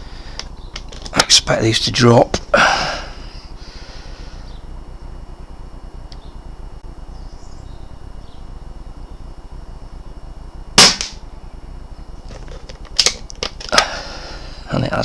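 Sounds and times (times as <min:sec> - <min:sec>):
steady low hum: 0:00.0 - 0:15.0
air rifle shot crack: 0:10.8 - 0:11.2.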